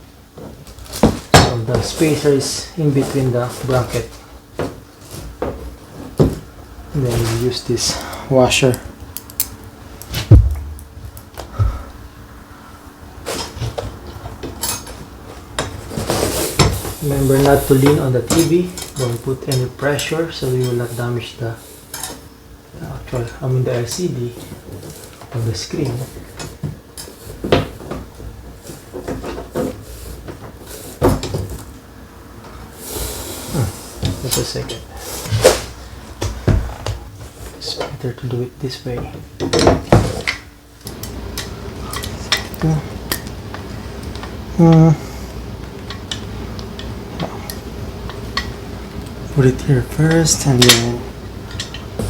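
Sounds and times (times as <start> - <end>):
low thump: 10.3 - 11.8.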